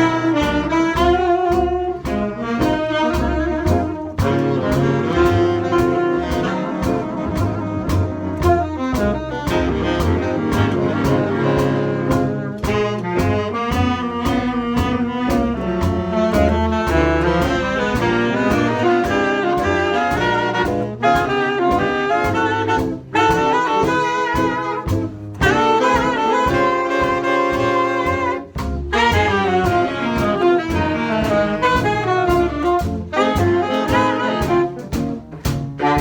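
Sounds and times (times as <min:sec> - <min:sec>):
big band playing jazz ballad: 0:00.0 - 0:36.0
saxophones: 0:00.0 - 0:36.0
walking double bass: 0:00.0 - 0:36.0.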